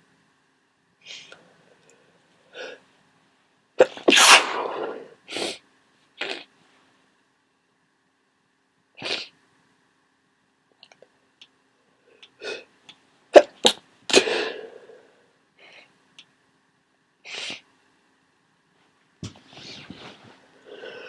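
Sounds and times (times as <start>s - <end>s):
person sneezing: 3.8s - 5.6s, 13.4s - 15.0s
person breathing: 14.1s - 16.0s, 19.5s - 21.0s.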